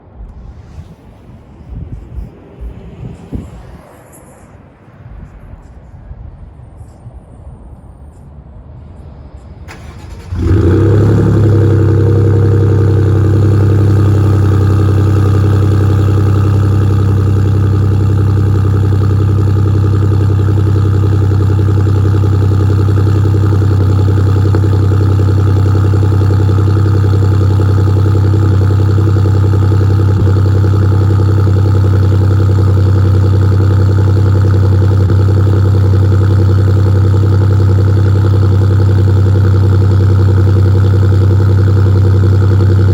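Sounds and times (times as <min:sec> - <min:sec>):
truck engine starting and idling: 0:09.7 - 0:42.9.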